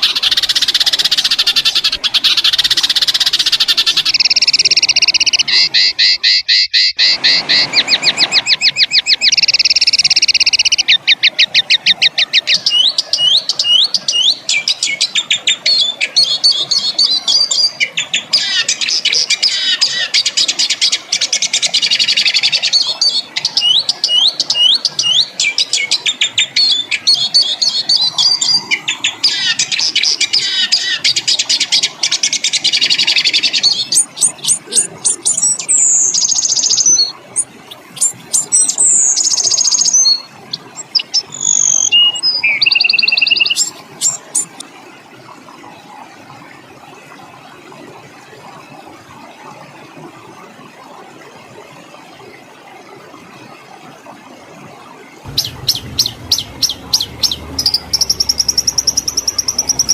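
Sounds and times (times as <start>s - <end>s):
buzzy songbird trills: 32.7s - 44.6s, 55.3s - 59.9s.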